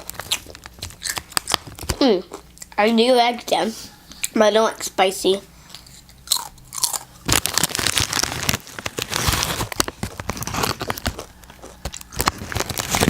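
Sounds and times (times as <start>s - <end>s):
chip bag crinkling: 0.0s - 2.8s, 5.7s - 13.0s.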